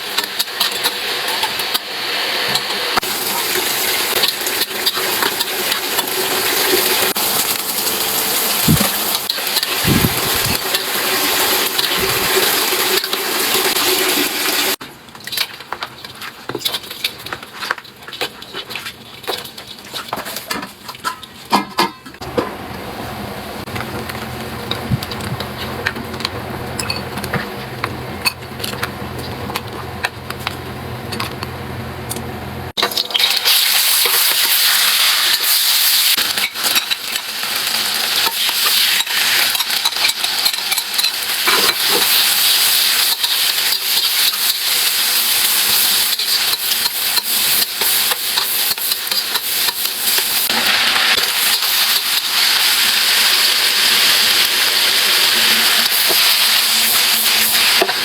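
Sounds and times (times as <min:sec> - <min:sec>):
food sizzling in a hot pan: 0:00.0 - 0:14.8, 0:32.9 - 0:58.0.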